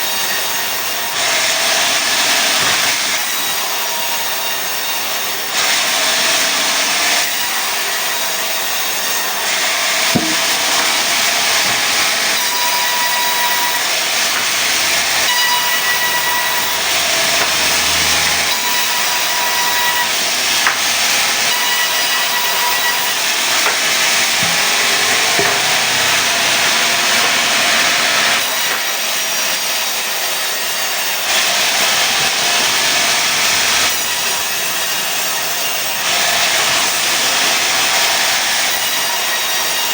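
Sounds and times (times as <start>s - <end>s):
saw cutting wood: 0.0s - 39.9s
sharp knocks: 10.0s - 13.6s, 23.6s - 26.3s.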